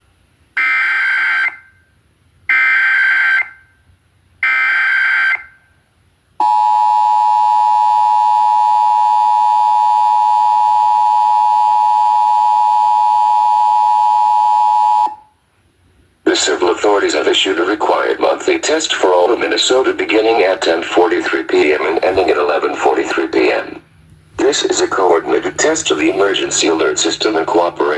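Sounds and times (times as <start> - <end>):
two-tone attention signal: 6.4 - 15.3.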